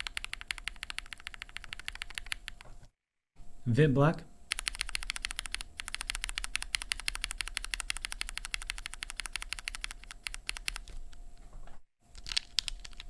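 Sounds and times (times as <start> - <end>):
mechanical keyboard typing: 0.0 - 2.7, 4.5 - 11.1, 12.1 - 13.0.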